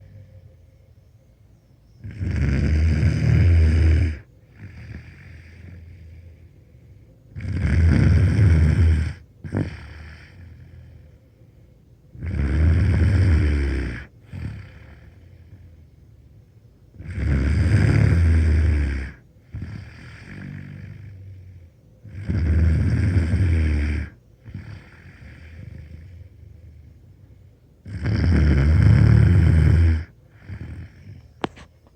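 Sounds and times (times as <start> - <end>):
quiet breathing: 0.0 - 31.9
boy snoring loudly: 2.0 - 5.9, 7.4 - 10.8, 12.2 - 15.2, 17.0 - 21.2, 22.1 - 26.2, 27.8 - 31.2.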